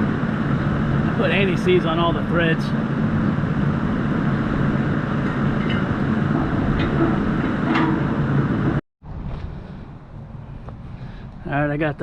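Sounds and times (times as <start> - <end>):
engine running: 0.0 - 12.0.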